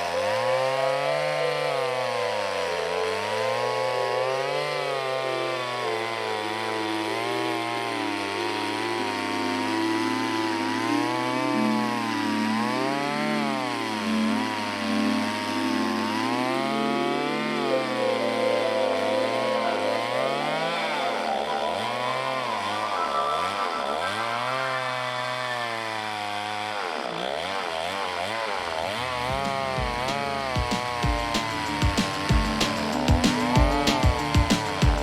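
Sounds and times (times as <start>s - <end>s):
chainsaw cutting a log: 24.9s - 35.0s.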